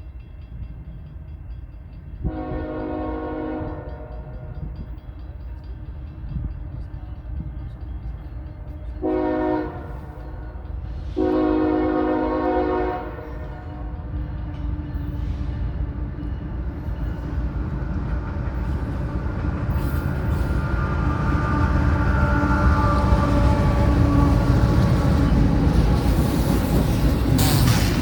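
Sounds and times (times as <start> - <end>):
train rumbling: 0.0 - 28.0
locomotive air horn blasts: 2.3 - 4.3, 9.0 - 10.5, 11.2 - 13.9.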